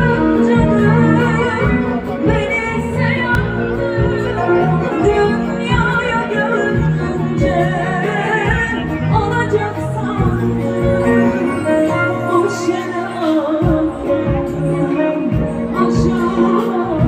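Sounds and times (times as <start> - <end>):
band accompaniment: 0.0 - 17.0
steady bass line: 0.0 - 17.0
woman singing with vibrato: 0.0 - 17.0.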